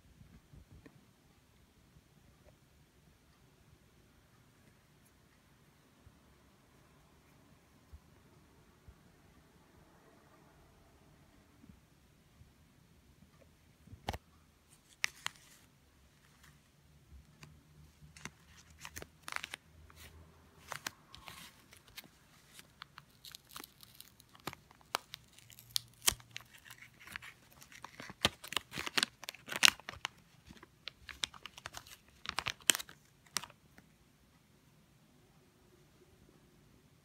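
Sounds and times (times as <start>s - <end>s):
plastic packaging crinkling: 14.8s - 16.6s, 18.1s - 33.6s.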